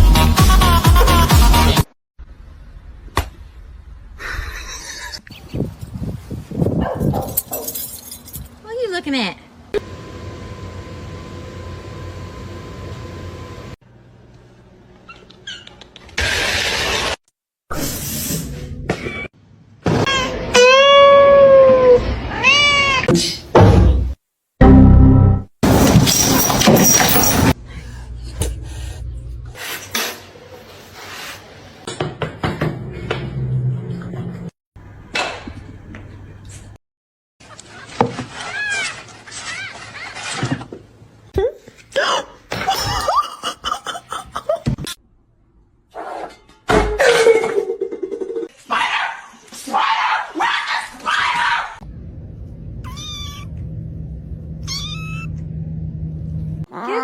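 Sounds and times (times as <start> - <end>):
cat meowing: 52.8 - 53.6, 54.6 - 55.3.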